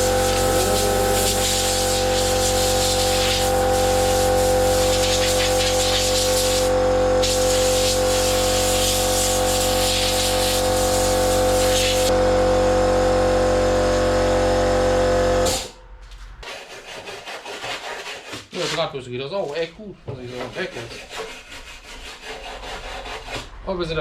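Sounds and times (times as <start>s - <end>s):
angle grinder motor whine: 0.0s - 8.8s, 10.3s - 15.8s.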